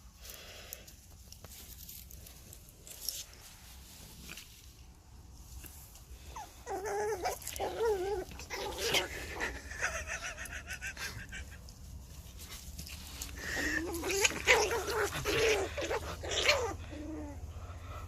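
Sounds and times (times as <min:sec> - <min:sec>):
dog whimpering: 0:06.3 - 0:11.5, 0:13.4 - 0:17.5.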